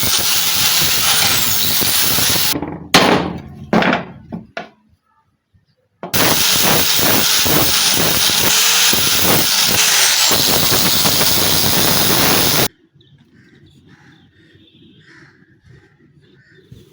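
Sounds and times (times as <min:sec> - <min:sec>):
loud steady hiss of spray: 0:00.0 - 0:02.6, 0:06.2 - 0:12.7.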